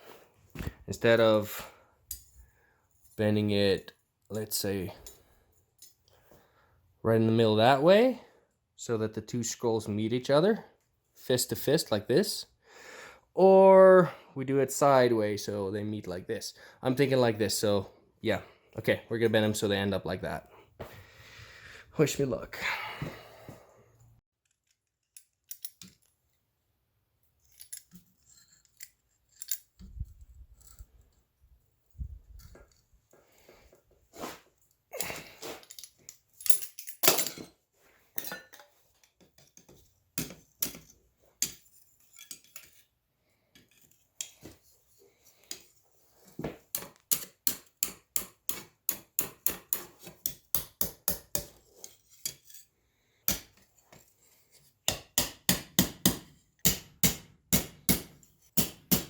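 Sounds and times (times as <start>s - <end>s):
metal clinks and knocks: 24.4s - 26.1s, 35.0s - 42.8s.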